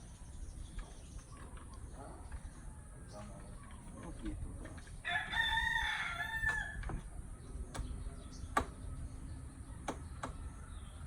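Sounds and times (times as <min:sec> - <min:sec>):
rooster crowing: 0:05.0 - 0:06.8.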